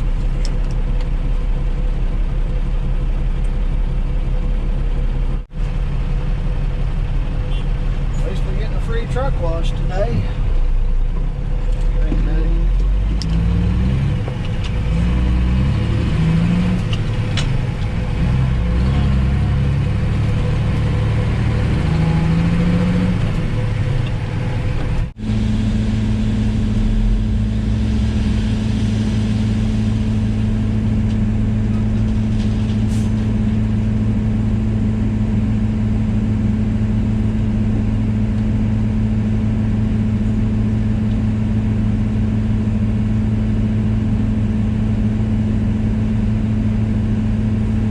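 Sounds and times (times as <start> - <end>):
diesel truck engine running: 0.0 - 47.9.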